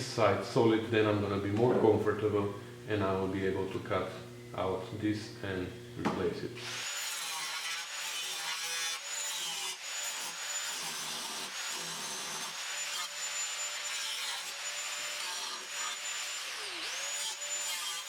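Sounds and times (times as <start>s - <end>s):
electric grinder grinding steel: 6.6s - 18.0s.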